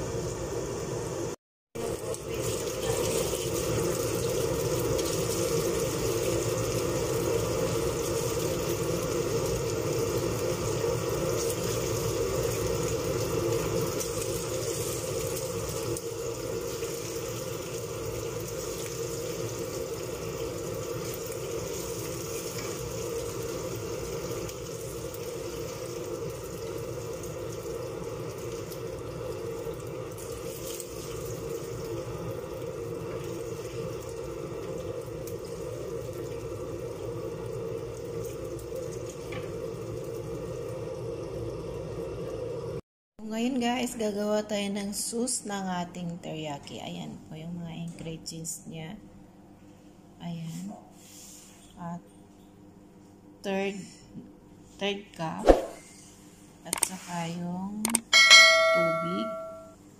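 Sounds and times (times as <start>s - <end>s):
chicken frying in hot oil: 0.0s - 42.8s
steady hum: 43.4s - 59.9s.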